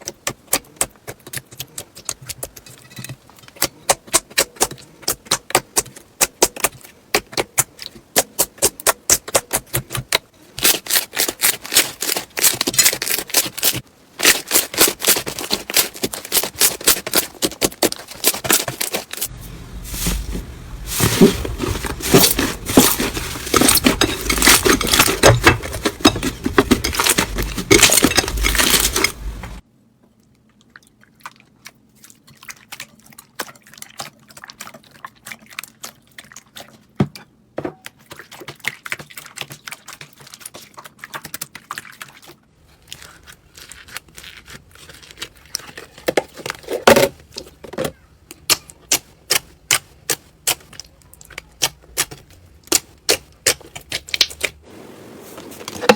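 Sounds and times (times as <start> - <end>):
slime crackling and popping: 52.7 - 54.5.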